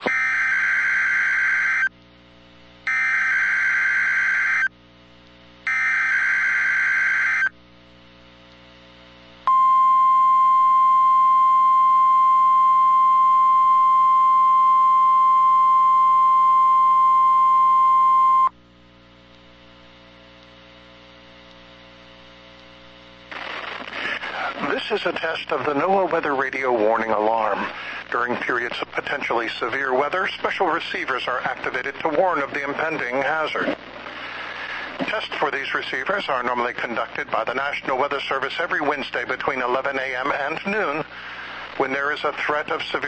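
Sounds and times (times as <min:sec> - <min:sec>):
steady warning alarm tone: 0:00.0 - 0:01.9, 0:02.9 - 0:04.7, 0:05.7 - 0:07.5, 0:09.5 - 0:18.5
faint receiver hum: 0:00.0 - 0:43.0.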